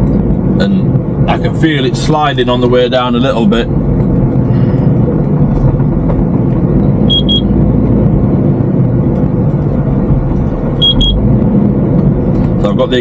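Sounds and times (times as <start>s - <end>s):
truck diesel engine droning: 0.0s - 13.0s
short high beeps: 7.1s - 7.5s, 10.8s - 11.2s.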